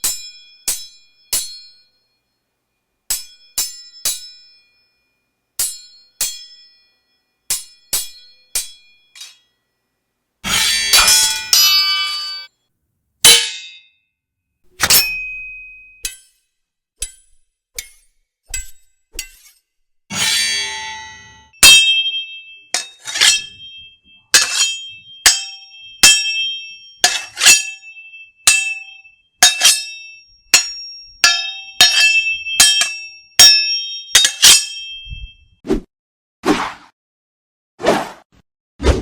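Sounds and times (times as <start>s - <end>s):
steel sword blades clanging: 7.5s - 9.5s, 10.4s - 12.5s, 13.3s - 13.9s, 14.7s - 16.4s, 17.0s - 35.3s
sword drawn from sheath: 14.7s - 15.9s, 17.9s - 21.4s, 22.8s - 23.6s.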